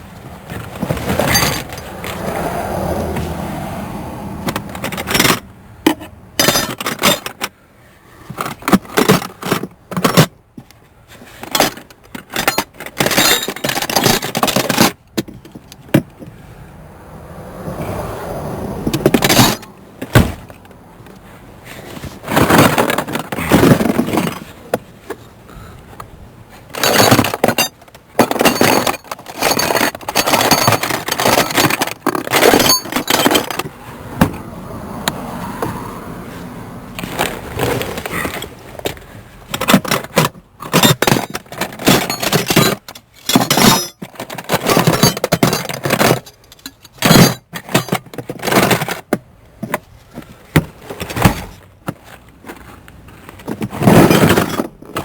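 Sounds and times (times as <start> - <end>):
metallic clinks and scrapes: 0.9 - 1.9, 4.5 - 7.5, 11.3 - 15.7, 26.7 - 33.7, 39.5 - 49.0.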